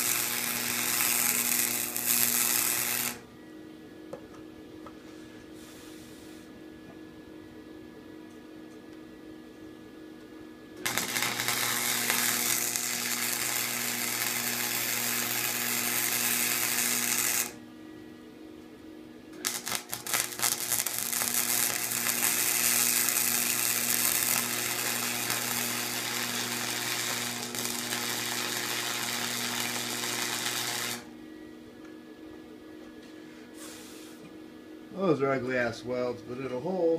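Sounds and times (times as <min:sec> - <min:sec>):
arc welder crackling hiss: 0:00.0 - 0:03.2, 0:10.8 - 0:17.6, 0:19.4 - 0:31.1, 0:33.5 - 0:34.3
low electrical hum: 0:00.0 - 0:36.9
arc striking pops: 0:10.8 - 0:17.6, 0:19.4 - 0:31.1.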